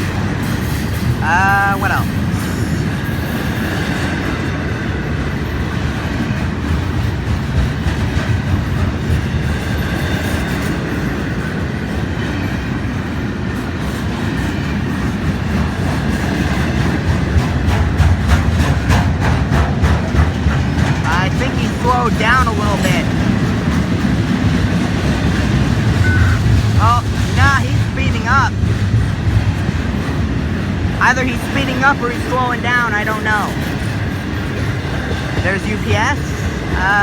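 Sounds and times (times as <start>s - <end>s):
train wheels rumbling on rail: 0.0s - 37.0s
wheels clicking over rail joints: 3.2s - 21.5s.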